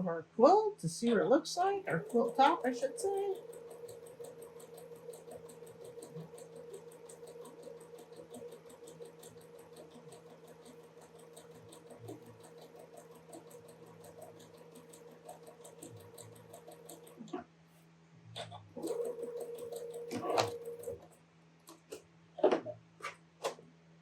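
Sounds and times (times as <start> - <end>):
sewing machine stitching: 1.8 - 17.3, 18.4 - 22.0.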